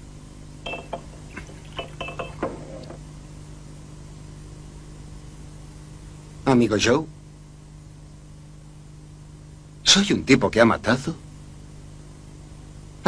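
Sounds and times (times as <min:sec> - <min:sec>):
bottle clinking against glass: 0:00.7 - 0:03.0.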